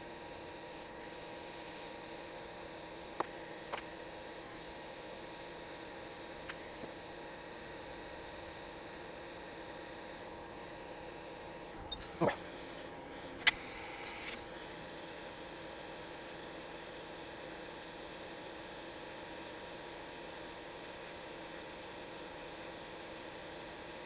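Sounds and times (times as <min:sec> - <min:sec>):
electrical hum and hiss: 0:00.0 - 0:17.0.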